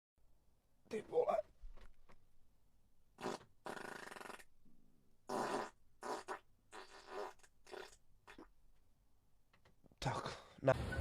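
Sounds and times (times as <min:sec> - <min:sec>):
farts: 0:03.2 - 0:04.5, 0:05.3 - 0:08.5.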